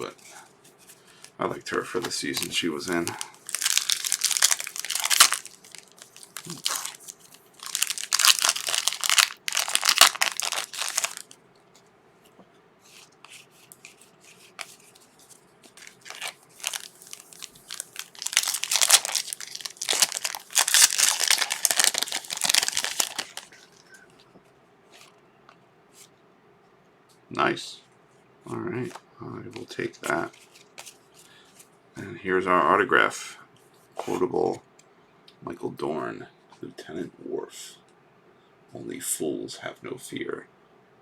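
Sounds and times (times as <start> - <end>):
plastic wrapper crinkling: 2.1 - 11.4, 13.7 - 24.0.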